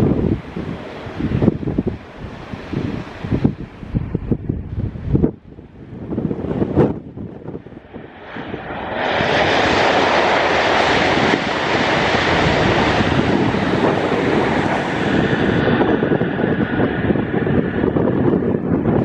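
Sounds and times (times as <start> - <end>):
wind buffeting microphone: 0.0 - 19.0
high-speed train rushing past: 6.0 - 19.0.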